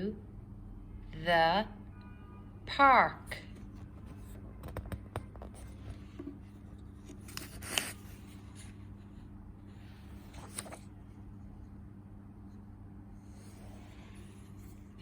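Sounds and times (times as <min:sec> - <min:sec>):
low steady hum: 0:00.0 - 0:15.0
book page rustling: 0:03.5 - 0:11.0.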